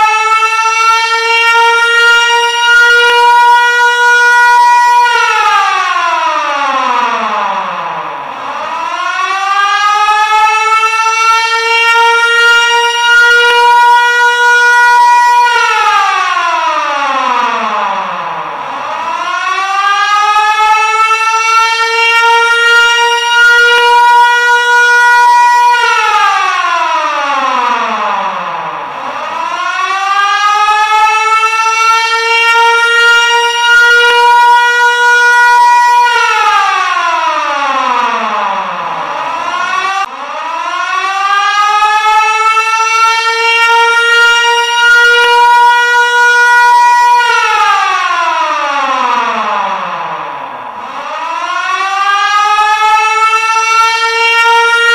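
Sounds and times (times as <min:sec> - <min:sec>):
siren wailing: 0:00.0 - 0:54.9.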